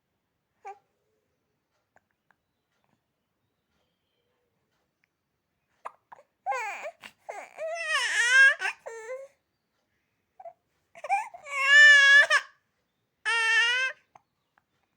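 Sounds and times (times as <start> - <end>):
infant crying: 6.5 - 9.3, 10.4 - 12.6, 13.3 - 14.1.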